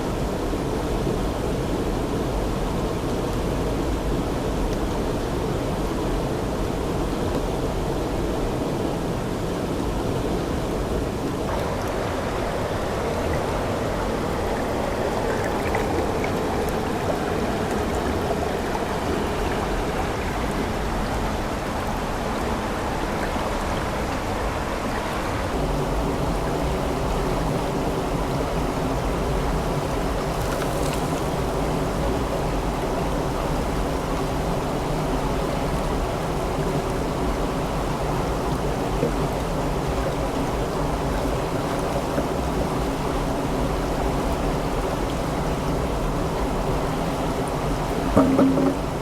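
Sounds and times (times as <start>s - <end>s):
stream water flowing: 0.0s - 49.0s.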